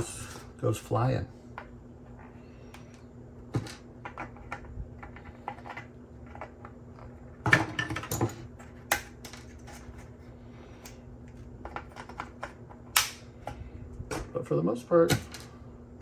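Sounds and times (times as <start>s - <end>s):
sharp plastic snap: 12.9s - 13.2s.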